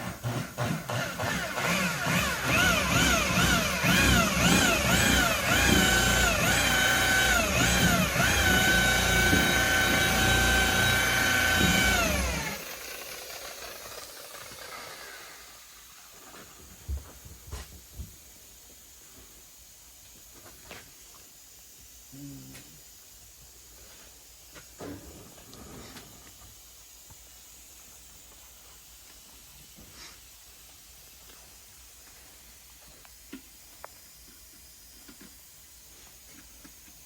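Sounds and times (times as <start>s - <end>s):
rotary buffer whining: 1.4s - 15.7s.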